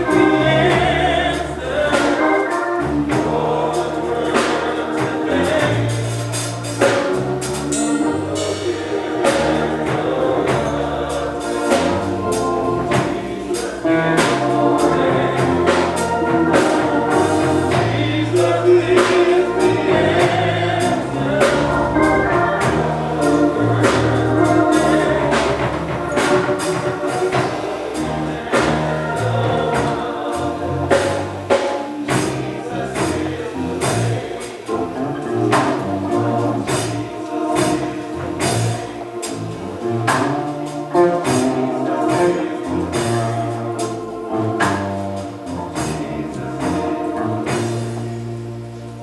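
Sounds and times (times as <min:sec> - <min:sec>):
band with bass and beat: 0:00.0 - 0:49.0
gospel choir singing: 0:00.0 - 0:49.0.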